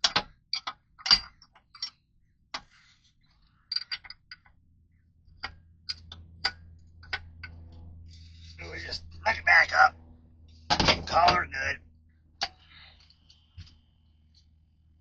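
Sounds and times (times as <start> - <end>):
low steady hum: 0.1 - 15.0
metal parts clicking: 3.7 - 4.5.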